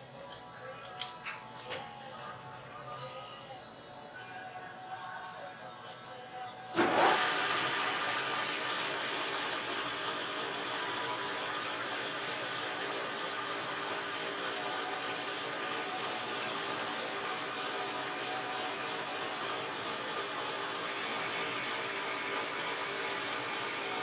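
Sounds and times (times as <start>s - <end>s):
electric motor machine running: 6.8s - 24.0s.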